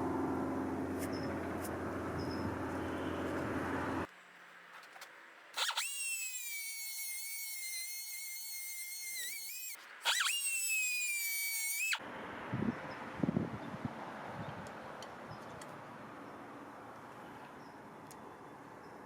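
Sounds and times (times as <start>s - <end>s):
small power tool motor whining: 5.6s - 12.0s.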